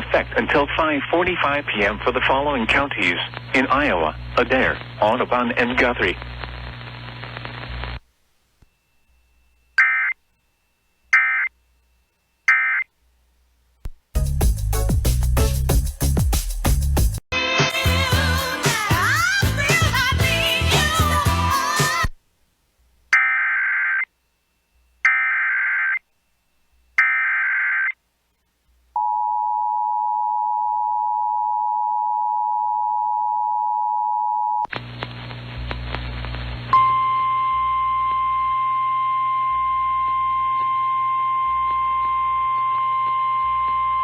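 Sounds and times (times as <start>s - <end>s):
radio noise with low hum: 0.0s - 8.8s, 34.7s - 36.8s.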